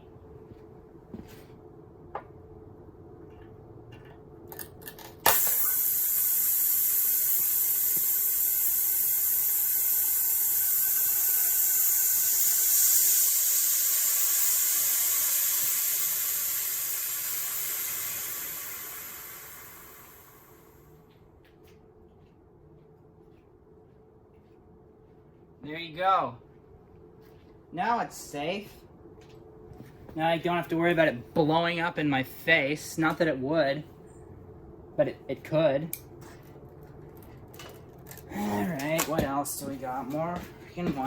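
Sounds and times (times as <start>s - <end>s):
air hissing into tube: 5.3s - 20.9s.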